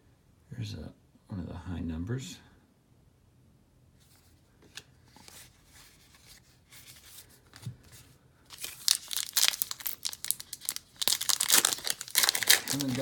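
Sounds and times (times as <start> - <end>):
foil wrapper tearing open: 8.5 - 13.0.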